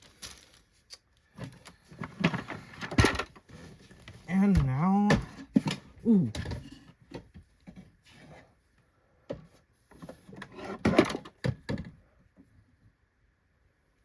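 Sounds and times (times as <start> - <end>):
plastic parts knocking and clattering: 1.3 - 8.0, 9.3 - 12.0.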